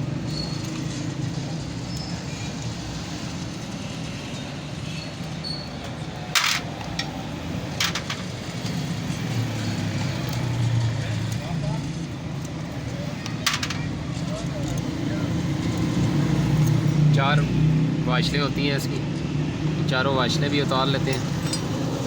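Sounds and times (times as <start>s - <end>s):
wrench clinking on metal bolts: 6.3s - 7.2s, 7.8s - 8.8s, 13.2s - 14.0s, 20.9s - 22.0s.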